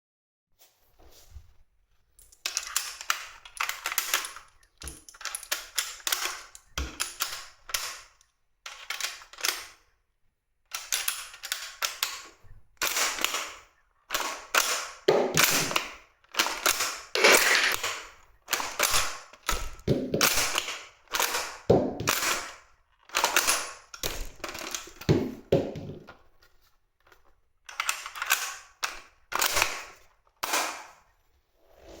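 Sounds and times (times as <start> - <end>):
spring-powered rifle shots: 16.6 - 17.9.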